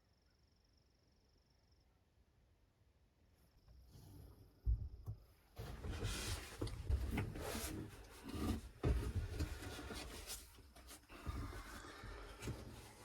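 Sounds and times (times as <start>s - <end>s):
rustling and rubbing: 5.6s - 13.0s.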